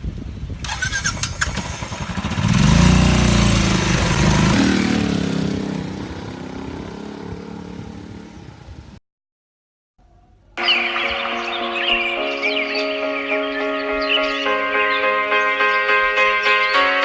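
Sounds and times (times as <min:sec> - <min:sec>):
motorcycle engine revving: 0:00.7 - 0:08.9.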